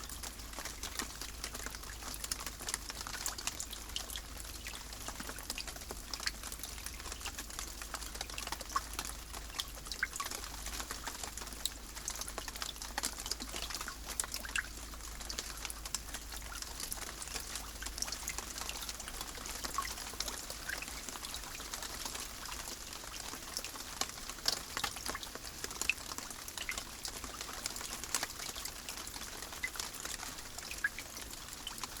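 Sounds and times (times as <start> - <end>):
raindrops ticking: 0.0 - 32.0
steady rain hiss: 0.0 - 32.0.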